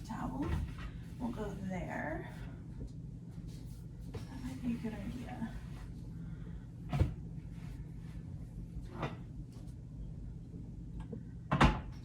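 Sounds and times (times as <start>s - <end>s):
low steady hum: 0.0s - 12.0s
objects knocking in a cupboard: 11.5s - 11.9s.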